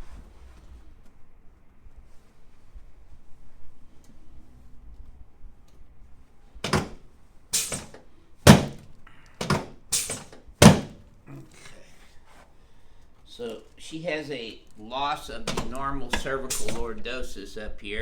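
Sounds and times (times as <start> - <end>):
sharp thuds of spine adjustment: 6.7 - 7.0, 7.6 - 11.1.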